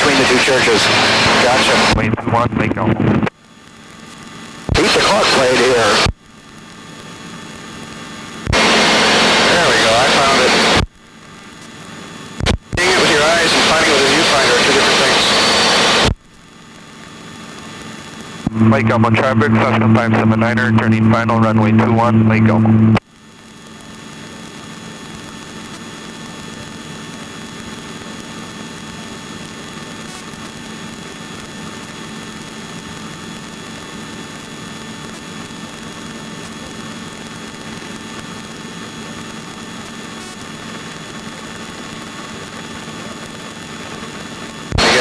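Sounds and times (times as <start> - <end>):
helicopter cabin rushing noise: 0.0 - 3.0, 8.6 - 10.8, 12.8 - 16.1
helicopter whine: 8.6 - 10.8.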